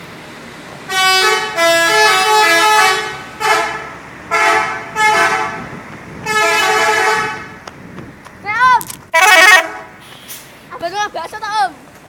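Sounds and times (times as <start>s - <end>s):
musical bus horn blasts: 0.9s - 7.6s, 9.1s - 10.4s.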